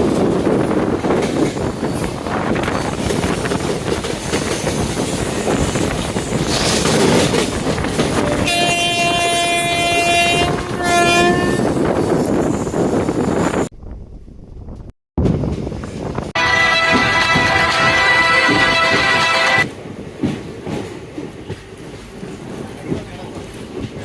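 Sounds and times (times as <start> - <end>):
train rumbling and wheel clatter: 0.0 - 24.0
locomotive horn blasts: 8.2 - 11.7, 16.4 - 19.7.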